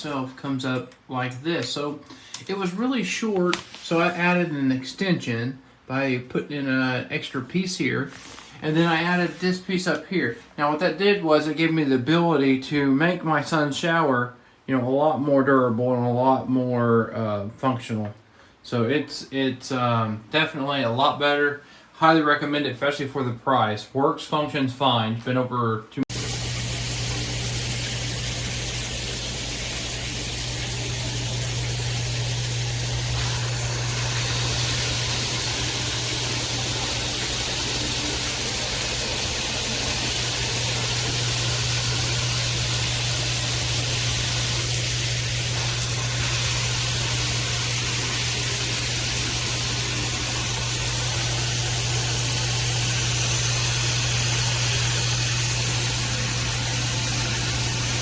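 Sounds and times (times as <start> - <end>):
shower head spraying water: 2.4 - 4.4, 26.1 - 58.0.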